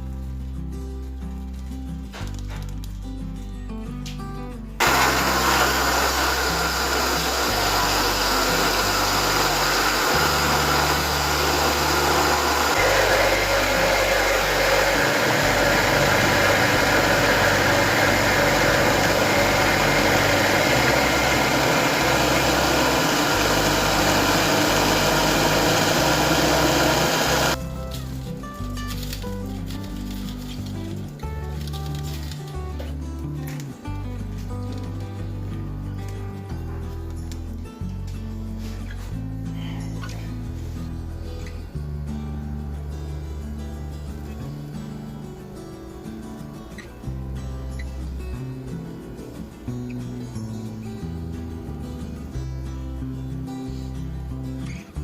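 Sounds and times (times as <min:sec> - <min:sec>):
background music: 0:00.0 - 0:55.0
blender running: 0:04.8 - 0:27.6.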